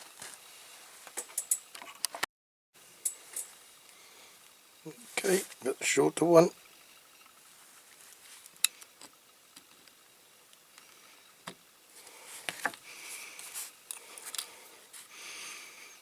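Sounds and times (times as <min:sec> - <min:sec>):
small tools clicking and tapping: 0:01.1 - 0:02.2, 0:03.0 - 0:03.6, 0:13.9 - 0:14.5.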